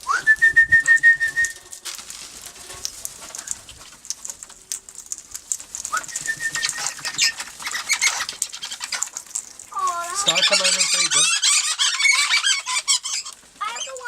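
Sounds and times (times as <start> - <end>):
high squeaks and chatter: 0.4 - 14.0
parrots calling: 5.8 - 14.0.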